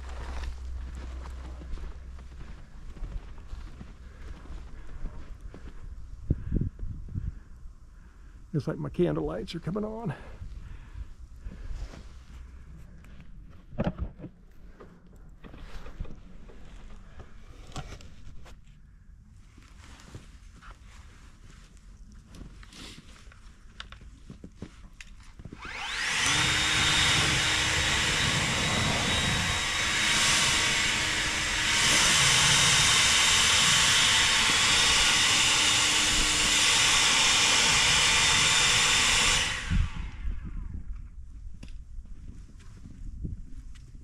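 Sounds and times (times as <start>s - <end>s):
snow blower rushing and whining: 25.4s - 40.6s.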